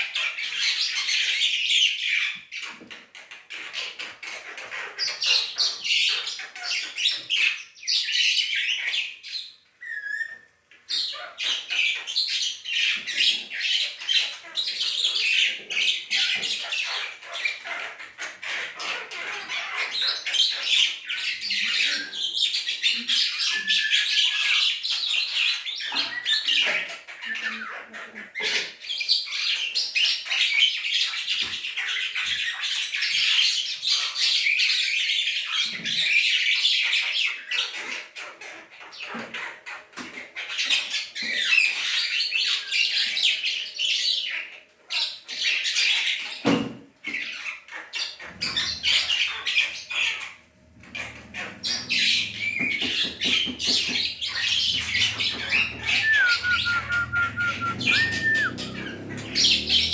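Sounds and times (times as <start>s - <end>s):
starling chattering and squawking: 47.8s - 59.9s
short clear whistle: 55.8s - 58.5s.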